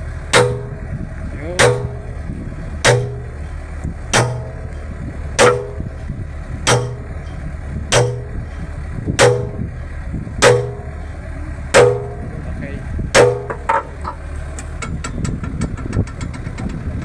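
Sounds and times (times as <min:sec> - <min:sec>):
steady low hum: 0:00.0 - 0:15.0
hammer striking steel: 0:00.4 - 0:00.9, 0:01.5 - 0:06.1, 0:06.7 - 0:08.6, 0:09.2 - 0:09.7, 0:10.4 - 0:11.0, 0:11.8 - 0:12.3, 0:13.2 - 0:14.2.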